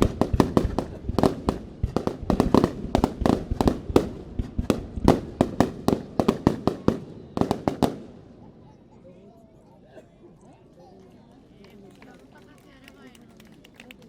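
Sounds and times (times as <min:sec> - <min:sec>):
fireworks bursting: 0:00.0 - 0:08.6.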